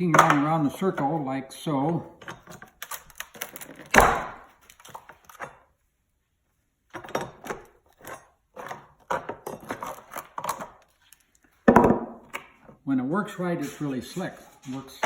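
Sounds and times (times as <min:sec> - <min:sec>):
hard mold blocks knocking: 0:00.0 - 0:00.8, 0:11.6 - 0:12.3.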